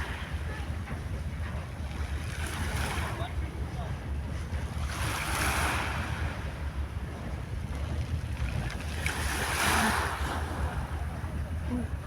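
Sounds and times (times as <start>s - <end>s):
wind rumbling on microphone: 0.0s - 12.0s
sea waves washing ashore: 4.8s - 6.8s, 8.3s - 12.0s.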